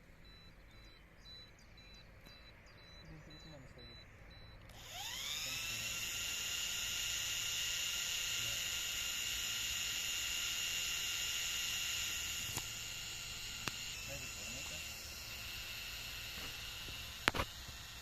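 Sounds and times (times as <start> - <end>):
drone propeller whine: 0.0 - 18.0
sharp clicks: 3.9 - 18.0.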